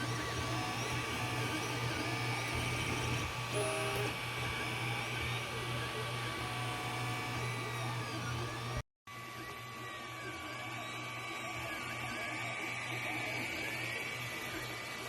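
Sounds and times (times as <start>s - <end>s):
stepper motors whining: 0.0s - 8.8s.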